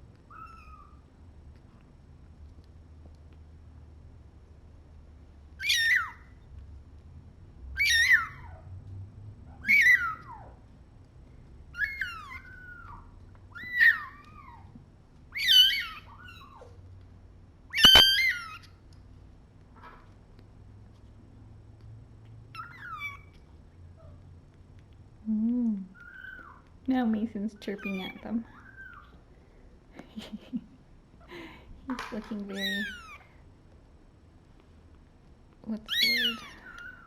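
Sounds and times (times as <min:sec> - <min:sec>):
kitten mewing: 0:17.8 - 0:18.6, 0:32.5 - 0:33.2, 0:35.9 - 0:37.0.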